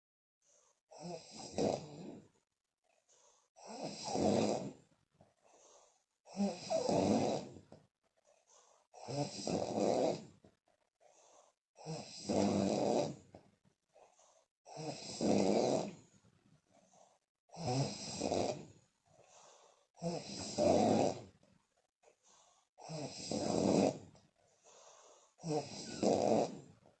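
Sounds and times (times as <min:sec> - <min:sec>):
woman snoring: 0:00.9 - 0:02.4, 0:03.6 - 0:04.9, 0:06.2 - 0:07.6, 0:08.9 - 0:10.3, 0:11.8 - 0:13.2, 0:14.6 - 0:16.1, 0:17.5 - 0:18.8, 0:19.5 - 0:21.3, 0:22.7 - 0:24.1, 0:25.1 - 0:26.8.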